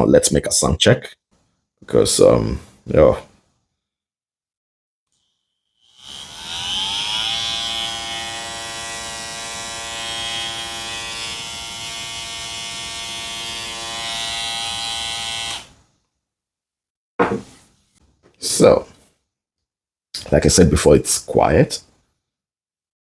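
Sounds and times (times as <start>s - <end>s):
hair trimmer buzzing: 5.2s - 15.8s.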